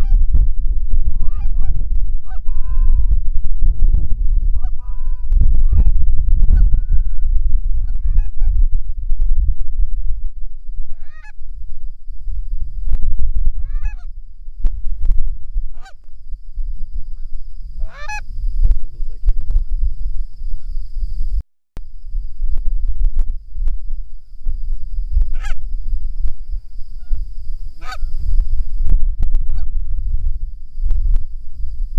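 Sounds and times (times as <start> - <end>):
wind rumble on microphone: 0.0 - 31.9
goose honking: 1.2 - 3.0, 4.6 - 5.9, 10.9 - 11.4, 13.6 - 14.1, 15.8 - 16.0, 17.8 - 18.2, 25.3 - 25.6, 27.8 - 28.1.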